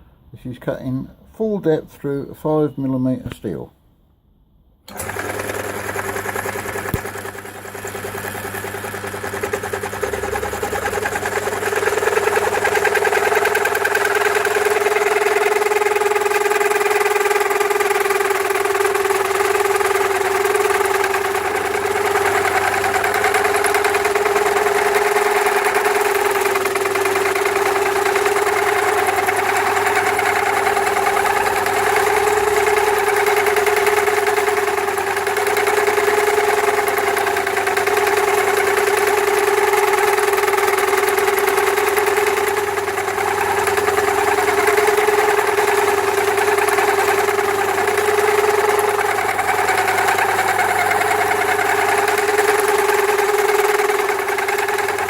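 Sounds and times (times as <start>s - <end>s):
drill motor hum: 4.9s - 55.0s
mill cutter cutting steel: 4.9s - 55.0s.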